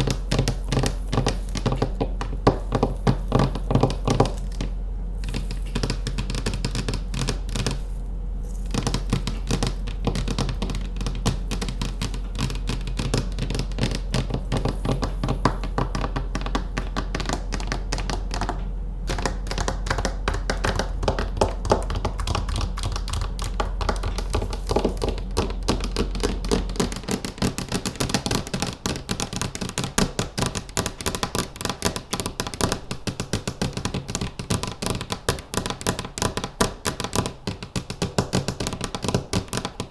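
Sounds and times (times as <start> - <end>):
low hum: 0.0 - 27.0
fingernails tapping: 0.0 - 39.9.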